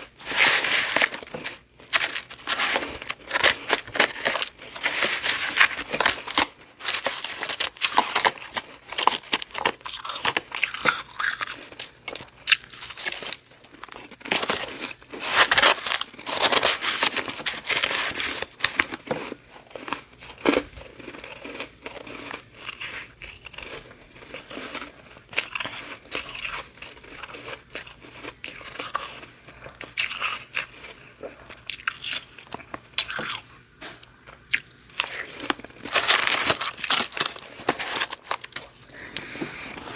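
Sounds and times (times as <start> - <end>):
crunching frost in mouth: 34.5 - 39.9.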